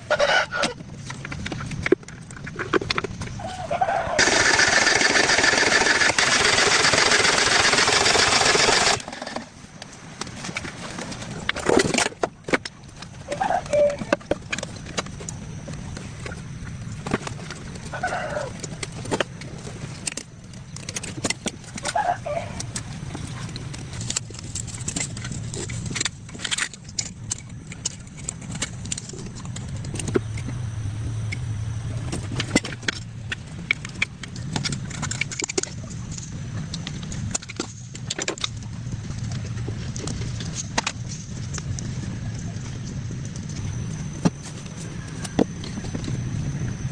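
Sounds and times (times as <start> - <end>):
low steady hum: 0.0 - 46.9
hand tools clicking on metal: 4.2 - 9.4.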